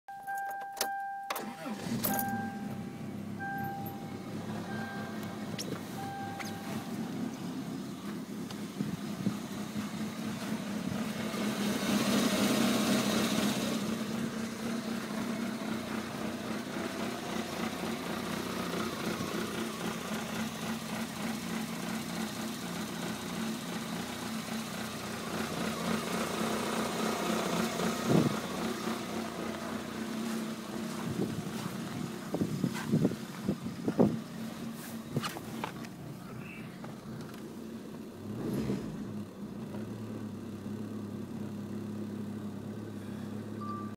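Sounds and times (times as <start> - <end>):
car engine idling roughly: 13.8 - 38.2.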